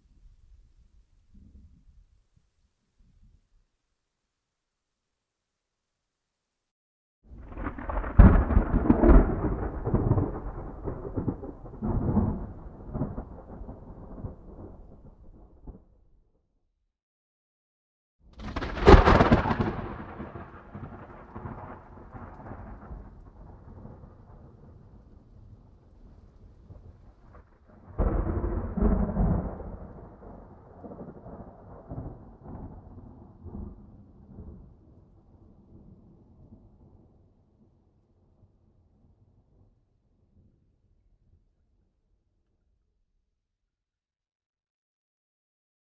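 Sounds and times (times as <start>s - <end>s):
thunder rumbling: 7.3s - 15.9s, 18.4s - 37.2s
sharp thunder crack: 7.4s - 15.7s, 18.4s - 23.9s, 27.8s - 33.7s.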